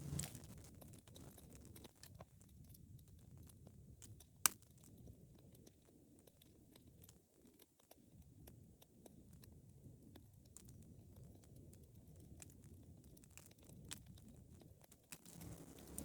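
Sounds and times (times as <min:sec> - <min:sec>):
wood fire rumbling: 0:00.0 - 0:00.6, 0:15.2 - 0:16.0
small fire crackles: 0:00.0 - 0:16.0.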